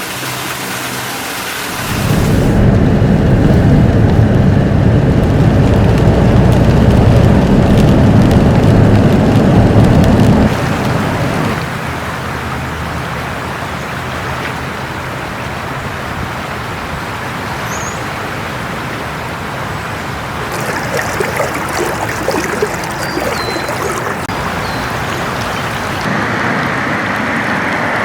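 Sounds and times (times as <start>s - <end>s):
splashy water crackle: 0.0s - 16.3s, 18.8s - 26.1s
fast-flowing floodwater rushing: 6.0s - 26.1s.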